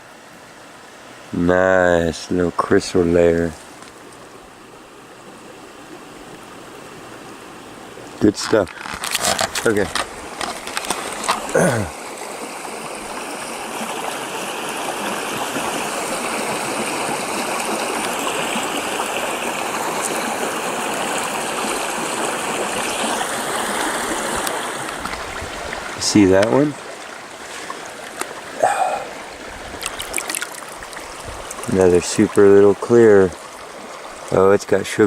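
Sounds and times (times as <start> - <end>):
stream water running: 0.0 - 35.0.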